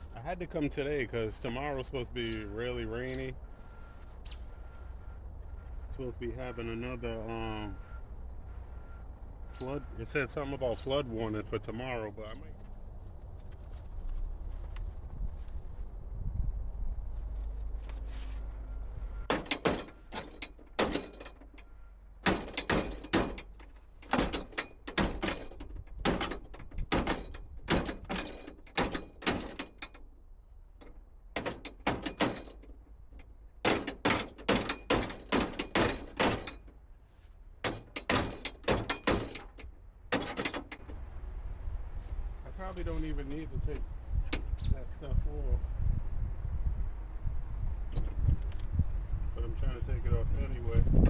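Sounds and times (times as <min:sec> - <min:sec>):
tools knocking on car door: 0:19.3 - 0:21.2, 0:22.2 - 0:29.8, 0:31.4 - 0:32.6, 0:33.6 - 0:36.7, 0:37.6 - 0:40.9.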